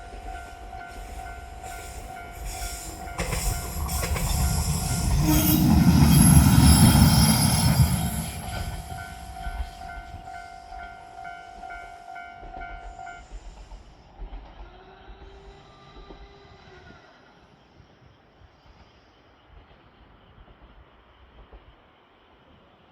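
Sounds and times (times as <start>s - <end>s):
crossing warning bell ringing: 0.0s - 13.3s
train passing: 0.0s - 22.9s.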